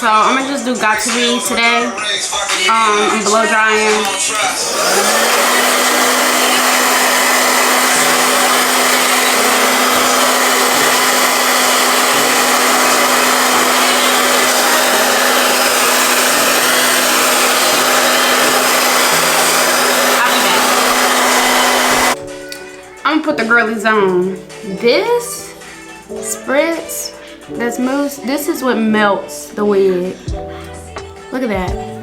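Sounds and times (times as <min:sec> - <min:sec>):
hair dryer blowing: 0:02.4 - 0:22.2.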